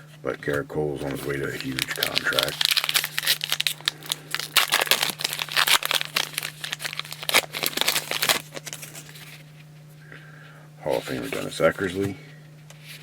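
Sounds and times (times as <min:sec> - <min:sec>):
foil wrapper crackling: 0:01.0 - 0:09.4.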